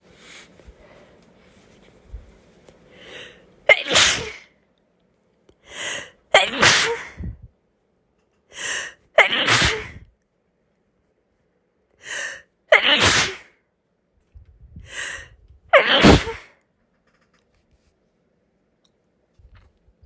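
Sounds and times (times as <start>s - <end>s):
person sneezing: 3.7s - 4.5s, 6.3s - 7.4s, 8.6s - 10.0s, 12.7s - 13.5s, 14.9s - 16.5s
sharp breath in: 14.9s - 15.4s.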